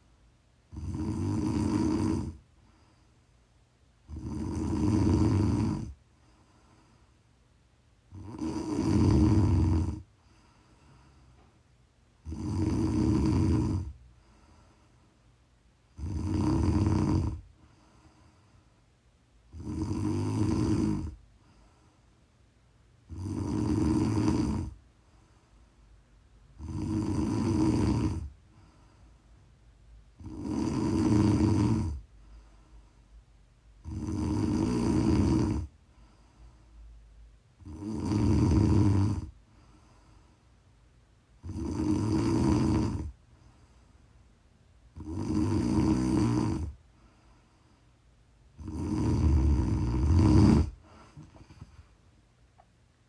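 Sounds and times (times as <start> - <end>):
person snoring: 0.7 - 2.4, 4.1 - 6.0, 8.1 - 10.1, 12.2 - 14.0, 15.9 - 17.5, 19.5 - 21.2, 23.1 - 24.8, 26.6 - 28.3, 30.2 - 32.0, 33.8 - 35.7, 37.6 - 39.4, 41.4 - 43.2, 45.0 - 46.8, 48.6 - 51.8.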